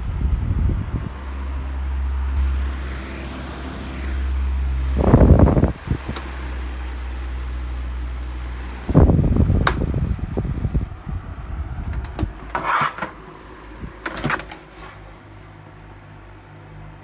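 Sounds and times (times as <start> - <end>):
fan motor humming: 2.4 - 16.6
clattering knocks and rattles: 11.8 - 15.6.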